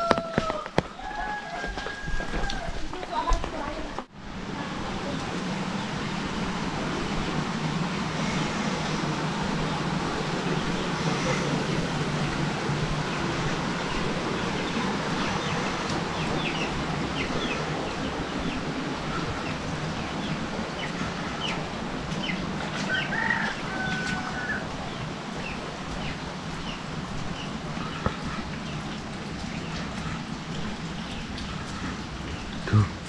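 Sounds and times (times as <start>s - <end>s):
rain hissing: 0.5s - 33.0s
chickens clucking and chirping: 8.2s - 32.9s.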